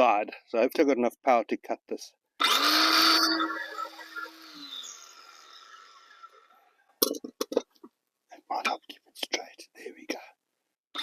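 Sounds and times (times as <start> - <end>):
circular saw cutting board: 2.4 - 6.5
saw motor winding down: 2.4 - 6.5.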